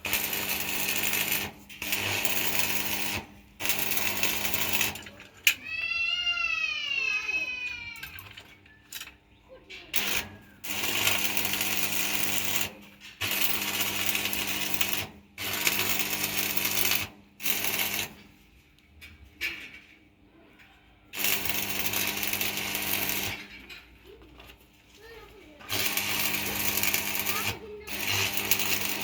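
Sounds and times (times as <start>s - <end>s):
arc welding buzzing crackle: 0.0s - 5.2s, 9.9s - 18.4s, 21.1s - 23.6s, 25.6s - 29.0s.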